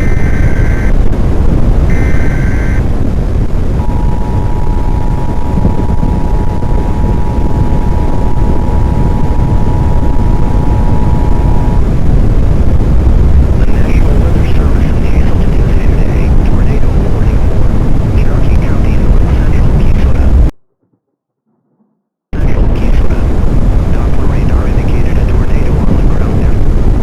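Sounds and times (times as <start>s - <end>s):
short buzzing data bursts: 0.0s - 1.0s, 1.9s - 2.8s
loud low rumble: 0.0s - 21.1s, 22.4s - 27.0s
two-note attention tone: 1.9s - 2.8s.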